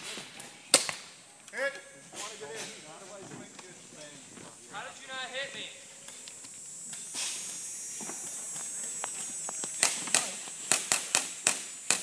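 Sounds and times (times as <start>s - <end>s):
airsoft pistol shots: 9.8s - 12.0s.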